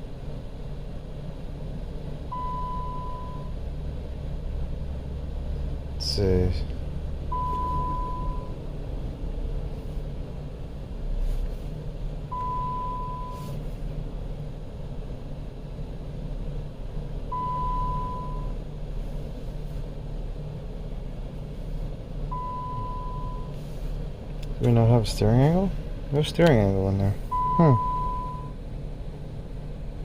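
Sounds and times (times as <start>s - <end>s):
low steady rumble: 0.0s - 30.0s
electronic beep: 7.4s - 8.5s, 27.4s - 28.5s.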